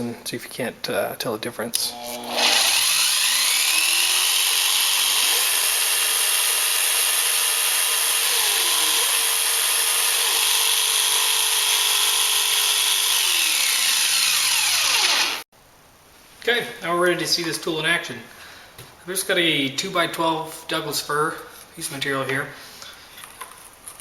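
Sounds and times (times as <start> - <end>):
jigsaw motor whining: 1.9 - 15.5.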